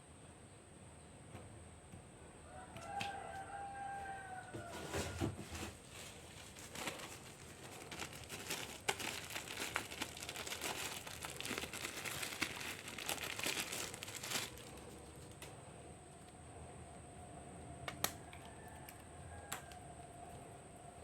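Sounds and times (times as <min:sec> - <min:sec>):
plastic packaging crinkling: 0:05.5 - 0:16.4.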